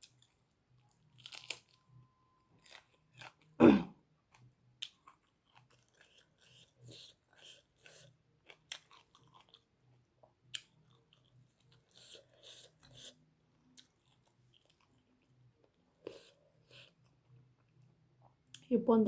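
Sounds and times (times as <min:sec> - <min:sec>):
person chewing: 0:00.0 - 0:01.8, 0:02.6 - 0:03.6, 0:04.3 - 0:09.7, 0:10.4 - 0:13.2, 0:13.8 - 0:15.4, 0:16.0 - 0:17.8.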